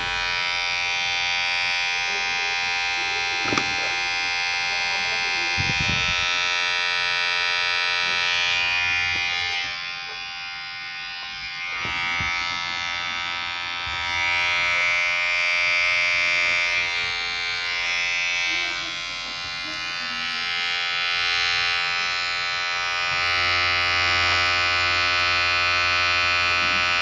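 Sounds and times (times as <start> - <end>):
electric hair clipper buzzing: 0.0 - 27.0.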